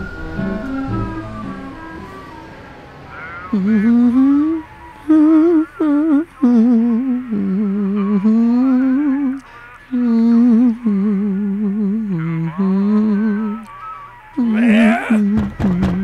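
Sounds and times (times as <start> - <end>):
person humming a slow tune: 3.5 - 16.0.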